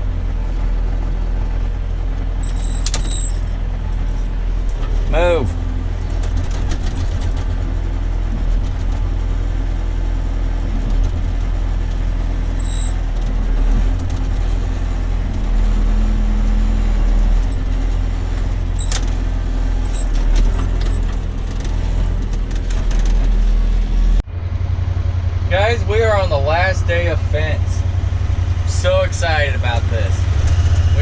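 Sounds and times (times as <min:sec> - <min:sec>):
loader engine rumbling: 0:00.0 - 0:31.0
rattles and clicks: 0:02.1 - 0:04.0, 0:06.0 - 0:09.2, 0:10.8 - 0:14.6, 0:17.3 - 0:23.8.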